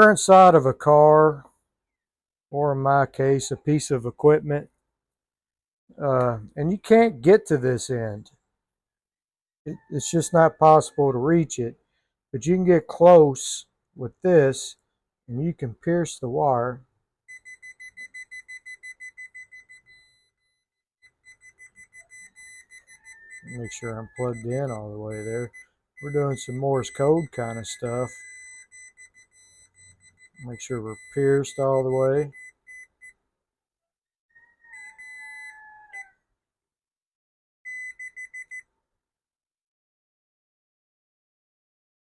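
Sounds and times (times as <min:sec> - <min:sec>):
multimeter beeping: 0:17.3 - 0:20.4, 0:21.0 - 0:33.2, 0:37.7 - 0:38.6.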